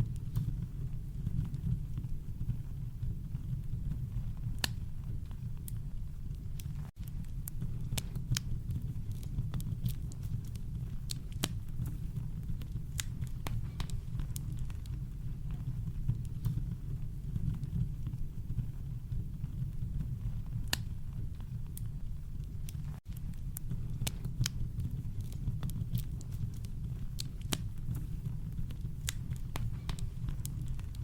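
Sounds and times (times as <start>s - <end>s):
campfire crackling: 0.0s - 31.0s.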